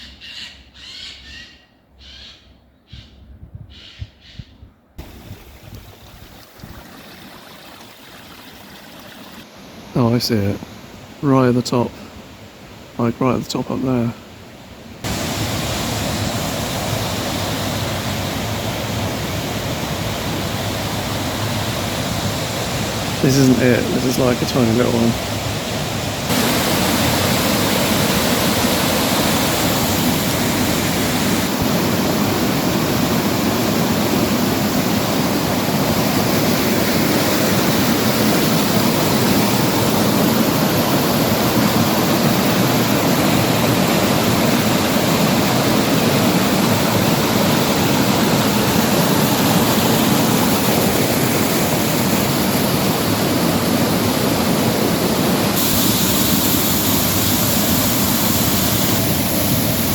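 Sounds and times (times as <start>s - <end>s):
water rushing over waterfall: 15.0s - 59.9s.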